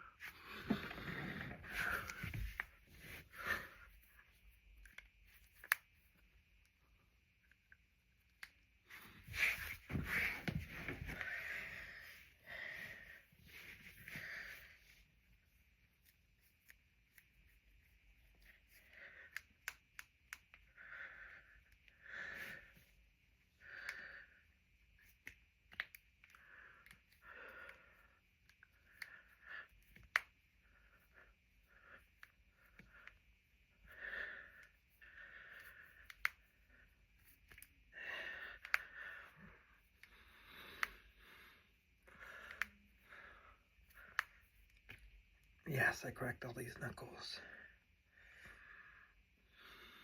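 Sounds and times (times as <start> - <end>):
knuckles cracking: 25.0 - 27.8.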